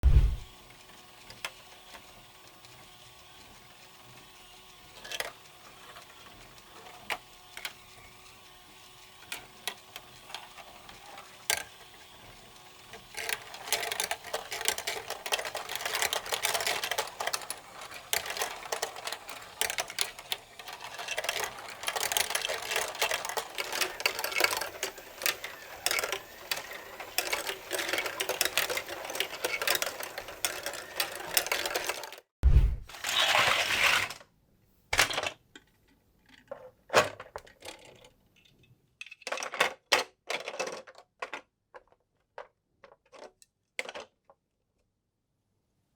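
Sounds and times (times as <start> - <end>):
marbles clattering on plastic run: 9.2 - 32.2, 33.0 - 34.2.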